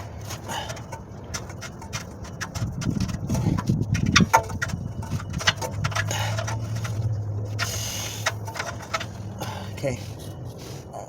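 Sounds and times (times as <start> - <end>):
metal tools clicking and knocking: 0.0 - 10.4
steady low hum: 0.0 - 11.0.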